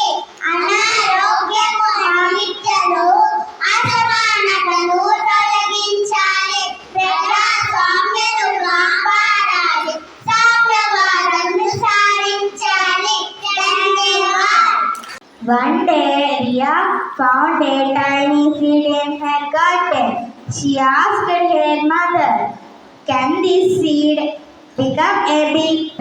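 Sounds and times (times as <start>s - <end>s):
child singing: 0.0s - 14.9s.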